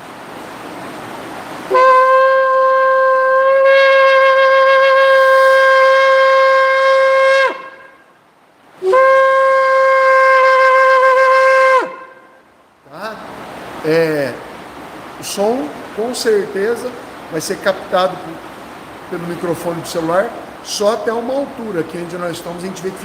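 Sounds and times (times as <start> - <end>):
shofar blasts: 1.7 - 8.2, 8.8 - 12.5.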